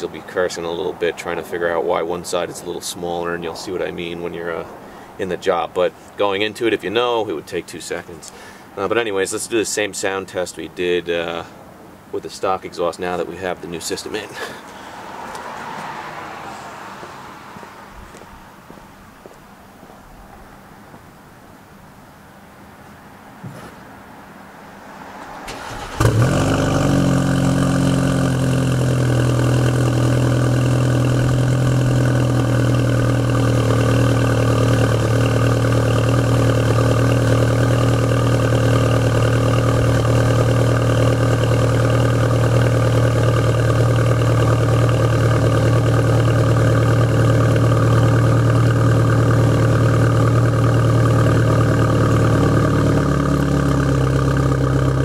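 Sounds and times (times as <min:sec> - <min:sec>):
car engine fast idle: 0:25.4 - 0:55.0.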